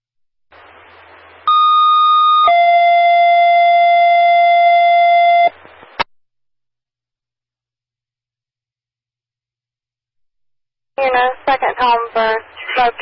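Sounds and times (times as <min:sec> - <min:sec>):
two-tone paging tones: 0:01.5 - 0:05.5
radio hiss: 0:11.0 - 0:13.0.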